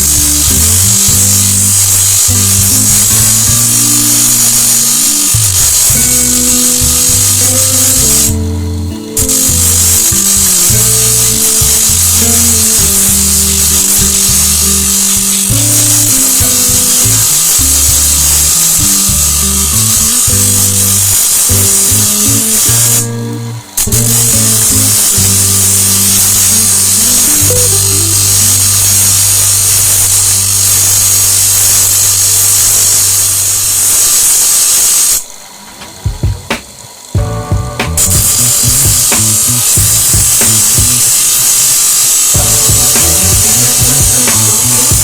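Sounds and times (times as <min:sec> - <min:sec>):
music with low held notes: 0:00.0 - 0:33.4, 0:35.9 - 0:41.3, 0:42.3 - 0:45.0
bright hiss: 0:00.0 - 0:45.0
sharp clicks: 0:37.8 - 0:41.5.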